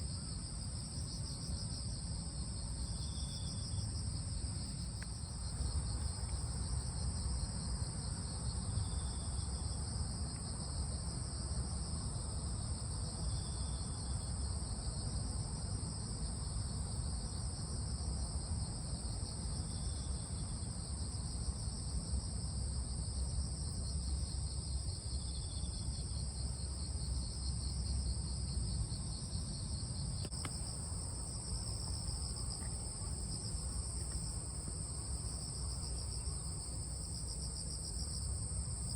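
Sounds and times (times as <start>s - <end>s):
crickets trilling: 0.0s - 10.8s, 23.2s - 38.9s.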